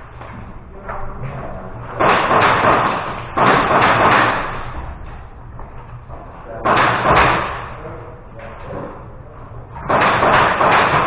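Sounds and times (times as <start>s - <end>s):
airsoft gunfire: 2.0s - 4.7s, 6.6s - 7.7s, 9.8s - 11.0s.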